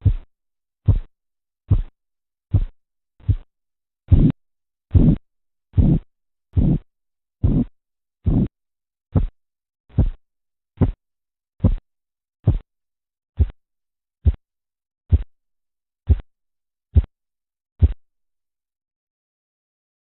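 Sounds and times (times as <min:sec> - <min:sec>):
pulse taps through stethoscope: 0:00.0 - 0:01.1, 0:01.7 - 0:01.9, 0:02.5 - 0:03.5, 0:04.1 - 0:05.2, 0:05.8 - 0:06.0, 0:06.6 - 0:06.8, 0:07.4 - 0:08.5, 0:09.1 - 0:10.2, 0:10.8 - 0:11.0, 0:11.6 - 0:11.8, 0:12.4 - 0:12.7, 0:13.4 - 0:13.6, 0:14.2 - 0:14.4, 0:15.1 - 0:15.3, 0:16.1 - 0:16.3, 0:17.8 - 0:18.0.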